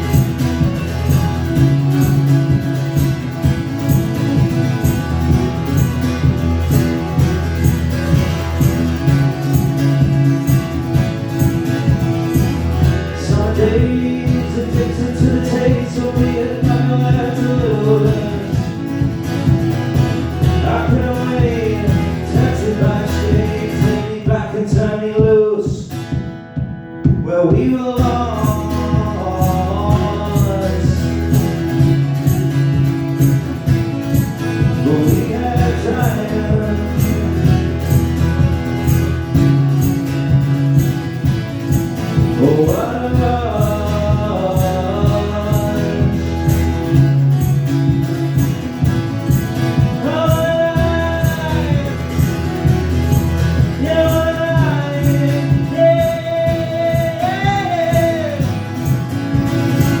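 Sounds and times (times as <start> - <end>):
instrumental accompaniment: 0.0 - 60.0
man singing long notes: 13.0 - 18.8, 20.6 - 25.9, 27.2 - 31.3, 42.4 - 46.4, 50.0 - 52.2, 53.8 - 58.6.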